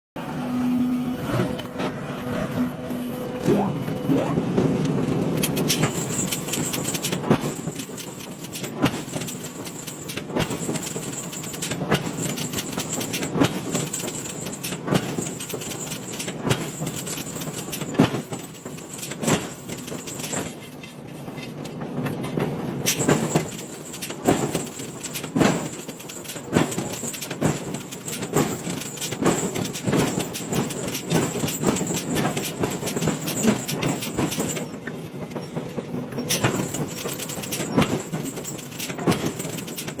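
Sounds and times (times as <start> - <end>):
industrial machinery din: 0.2 - 20.5
machinery clanks and knocks: 3.2 - 40.0.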